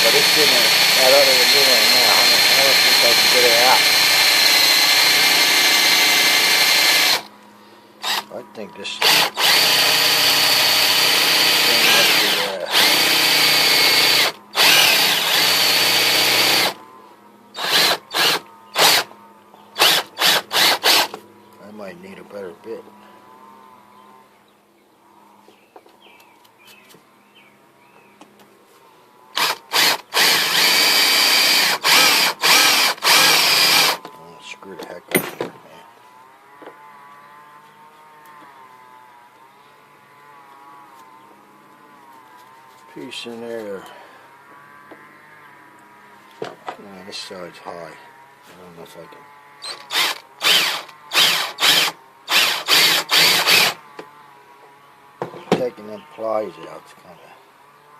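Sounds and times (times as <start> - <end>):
electric drill boring into wood: 0.0 - 7.3, 8.0 - 16.8, 17.6 - 19.2, 19.8 - 21.2, 29.3 - 34.1, 49.6 - 54.1.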